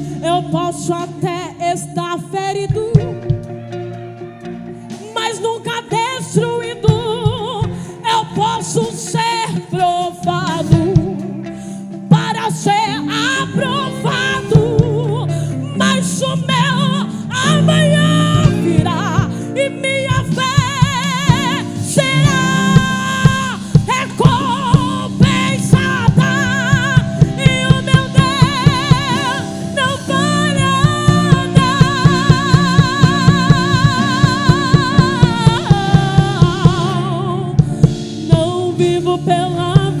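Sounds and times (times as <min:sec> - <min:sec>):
band playing gospel music: 0:00.0 - 0:40.0
person singing with vibrato: 0:04.8 - 0:40.0
steady drum beat: 0:20.1 - 0:40.0.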